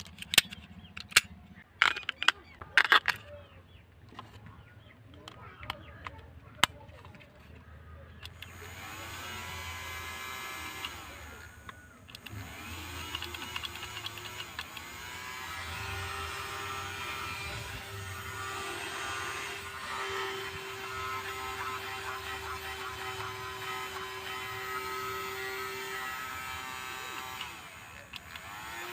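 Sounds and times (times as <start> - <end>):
small electric motor whirring: 8.2 - 28.9.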